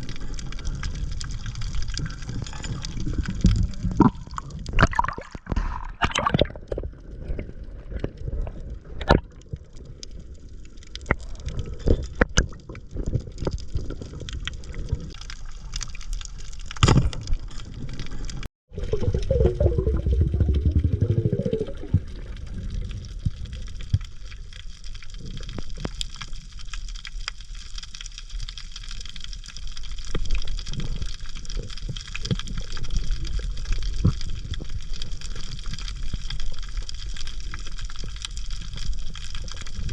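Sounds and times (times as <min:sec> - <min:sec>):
water bubbling: 0:00.0 - 0:16.6, 0:18.7 - 0:26.4
underwater noisy wash: 0:17.2 - 0:26.6.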